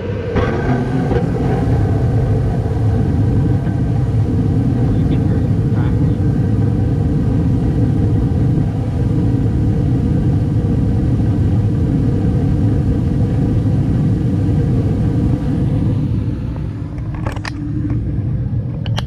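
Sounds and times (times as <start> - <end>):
furnace burners and fans rumbling: 0.0 - 19.0.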